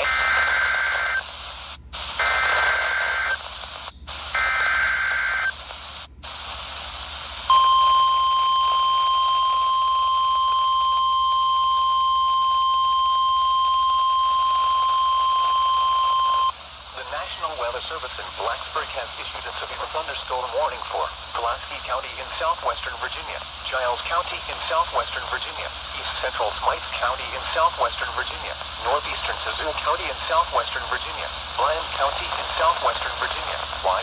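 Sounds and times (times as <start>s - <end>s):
radio hiss: 0.0s - 7.7s, 8.4s - 34.0s
steady warning alarm tone: 7.5s - 17.5s
two-tone data screech: 14.3s - 17.6s.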